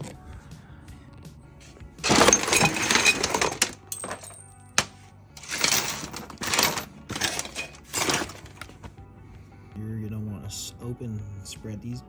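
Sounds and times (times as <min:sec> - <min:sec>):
small metal tools rattling: 0:02.0 - 0:08.9.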